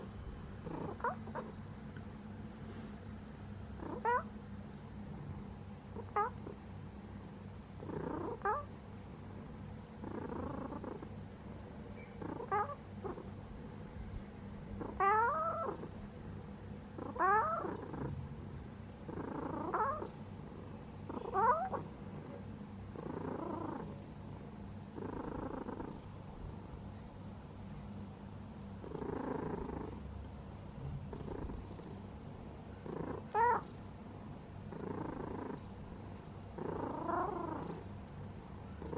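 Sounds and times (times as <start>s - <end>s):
cat snoring: 0.6s - 1.6s, 3.8s - 4.2s, 7.8s - 11.2s, 12.2s - 13.3s, 14.8s - 16.0s, 17.0s - 18.2s, 19.0s - 26.1s, 28.8s - 30.0s, 30.6s - 32.0s, 32.8s - 33.8s, 34.6s - 37.9s.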